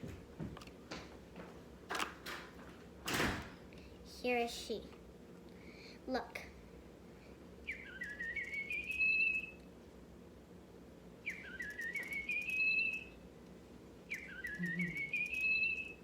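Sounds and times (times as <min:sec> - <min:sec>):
electronic toy bird chirping: 0:07.6 - 0:09.6, 0:11.2 - 0:13.2, 0:14.1 - 0:16.0.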